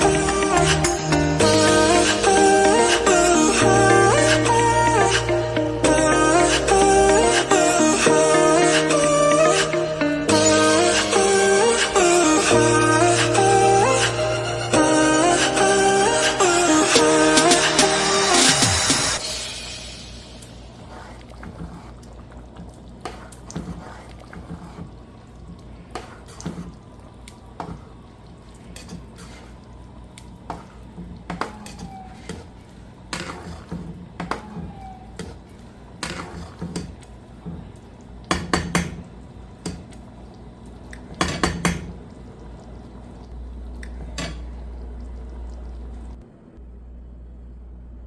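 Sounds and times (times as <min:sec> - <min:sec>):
low hum: 0:41.9 - 0:48.0.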